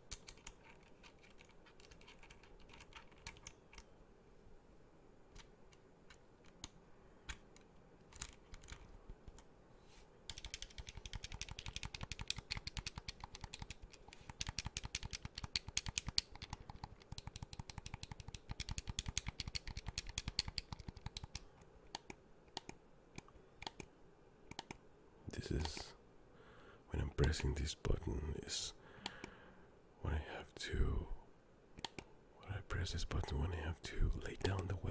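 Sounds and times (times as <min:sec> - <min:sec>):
controller buttons clicking: 0:00.1 - 0:03.9, 0:10.3 - 0:23.9, 0:24.5 - 0:24.8, 0:31.8 - 0:32.1, 0:34.3 - 0:34.8.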